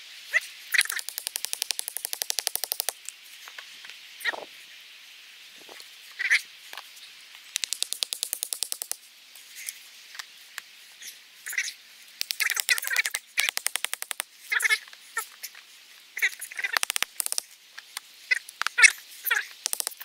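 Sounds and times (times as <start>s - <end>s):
fast dry clicking rattles: 0.8s - 3.1s, 7.5s - 9.0s, 12.2s - 14.3s, 16.8s - 17.9s, 19.5s - 20.0s
short calls: 12.2s - 14.7s.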